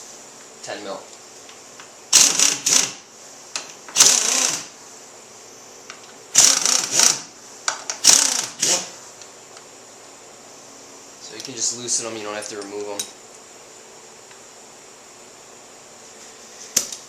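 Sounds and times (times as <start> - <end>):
ratchet wrench clicking: 2.2 - 2.9, 4.0 - 4.7, 6.4 - 7.2, 8.0 - 8.8.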